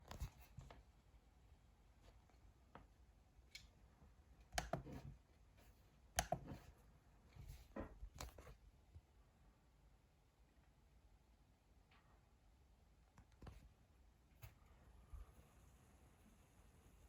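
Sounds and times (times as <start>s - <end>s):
laptop cooling fan hiss: 13.3s - 17.0s.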